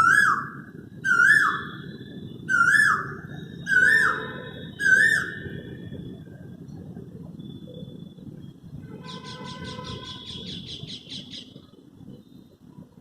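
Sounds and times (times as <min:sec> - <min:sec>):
cuckoo calling: 0:00.0 - 0:05.6.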